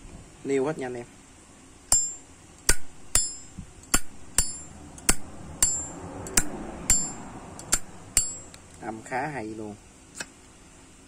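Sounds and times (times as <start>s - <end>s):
high metal ping: 1.9s - 8.6s.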